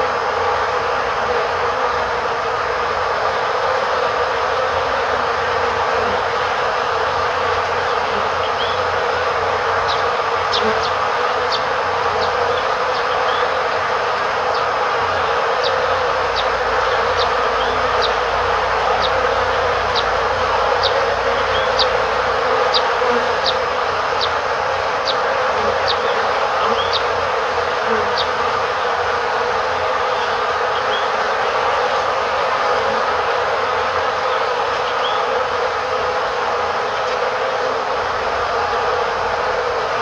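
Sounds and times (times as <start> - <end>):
bees buzzing: 0.0 - 40.0
bird chirps: 26.8 - 27.1.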